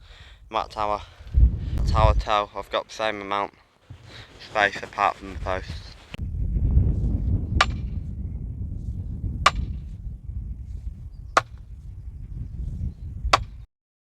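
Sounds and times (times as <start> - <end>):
low steady rumble: 5.4 - 13.1
sledgehammer striking fence post: 7.6 - 7.8, 9.5 - 9.8, 13.4 - 13.6.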